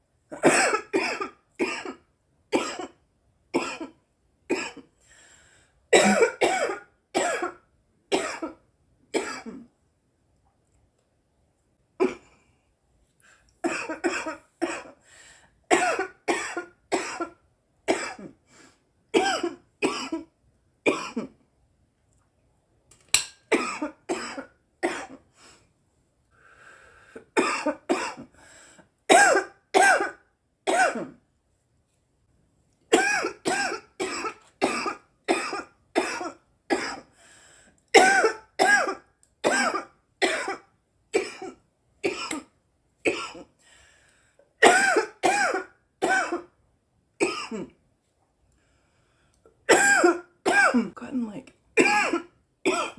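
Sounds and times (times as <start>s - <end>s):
girl coughing: 0.4s - 2.0s, 2.6s - 3.0s, 5.9s - 8.6s, 9.2s - 9.6s, 13.7s - 14.9s, 15.7s - 18.3s, 19.2s - 20.3s, 20.9s - 21.3s, 23.5s - 25.2s, 27.4s - 28.2s, 29.1s - 31.2s, 32.9s - 37.0s, 38.0s - 40.6s, 43.1s - 43.4s, 44.6s - 46.5s, 47.2s - 47.8s, 49.7s - 51.0s, 51.8s - 52.9s.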